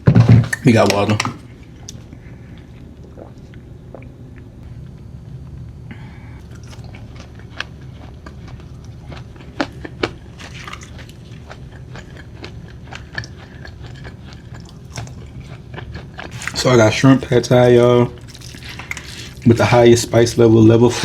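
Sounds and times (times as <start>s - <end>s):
steady low hum: 0.0s - 21.0s
takeout food crackling and crunching: 6.4s - 21.0s.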